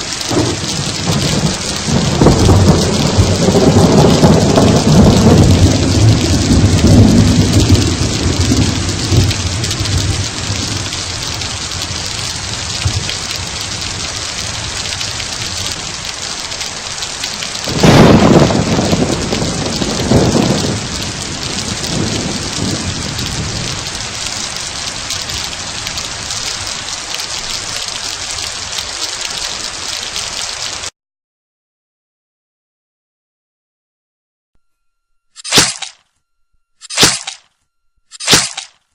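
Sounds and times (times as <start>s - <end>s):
thunder rumbling: 0.0s - 28.8s
steady rain: 0.0s - 30.9s.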